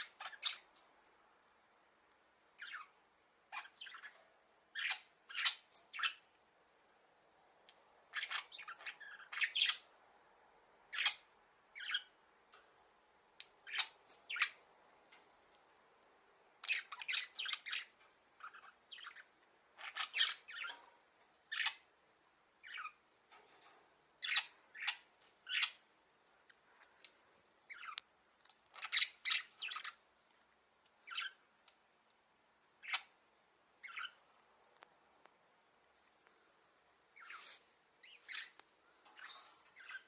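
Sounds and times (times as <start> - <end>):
budgerigars squawking and chirping: 4.8 - 6.2, 8.1 - 9.9, 10.9 - 12.2, 16.6 - 20.9, 22.6 - 23.0, 28.7 - 30.0, 31.1 - 31.4, 33.8 - 34.3, 37.2 - 38.6, 39.2 - 40.0.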